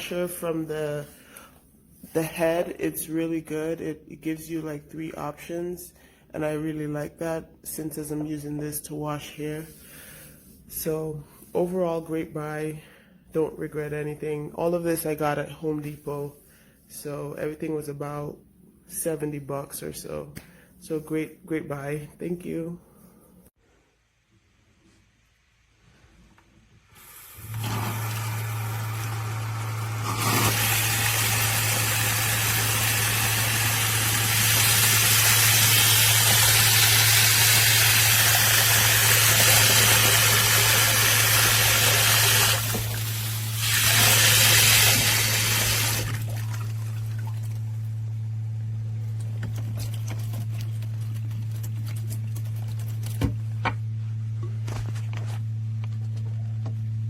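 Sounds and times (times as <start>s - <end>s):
water spraying from sprayer: 27.0s - 46.6s
steady low hum: 36.1s - 57.0s.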